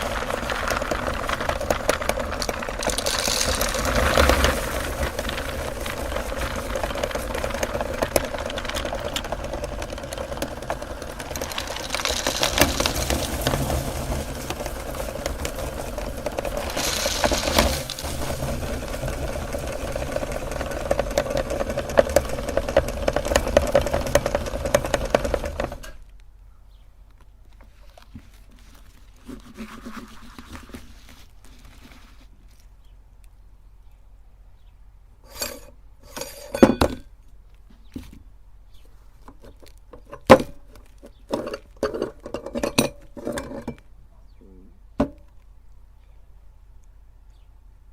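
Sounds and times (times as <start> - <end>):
hard candy crunching: 0.0 - 25.9
meat grinder motor hum: 0.0 - 25.9.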